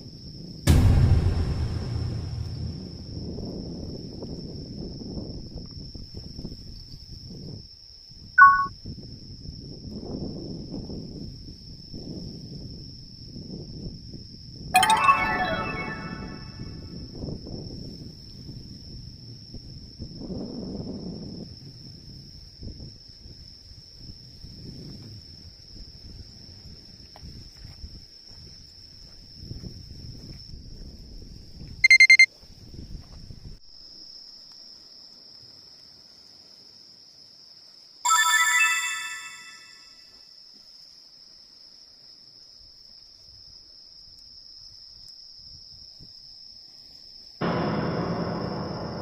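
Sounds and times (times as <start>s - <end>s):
sudden loud sound: 0.7s - 3.6s, 14.8s - 16.8s, 47.4s - 49.0s
low rumbling surges: 0.7s - 4.0s, 47.4s - 49.0s
crickets trilling: 33.6s - 38.0s.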